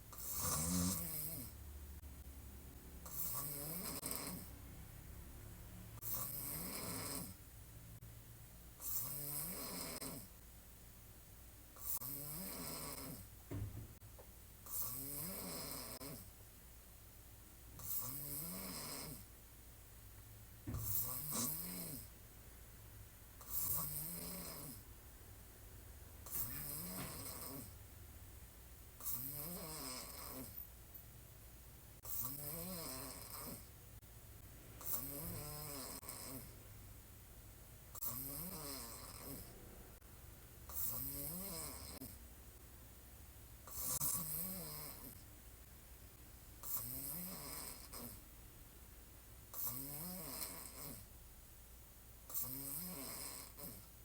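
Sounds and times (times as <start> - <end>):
woman snoring: 0.1 - 1.6, 3.0 - 4.6, 6.0 - 7.4, 8.8 - 10.3, 11.8 - 13.3, 14.7 - 16.3, 17.8 - 19.3, 20.8 - 22.1, 23.4 - 24.8, 26.2 - 27.7, 29.0 - 30.6, 32.0 - 33.7, 34.8 - 36.6, 37.9 - 39.8, 40.7 - 42.2, 43.7 - 45.2, 46.6 - 48.2, 49.6 - 51.1, 52.3 - 53.9.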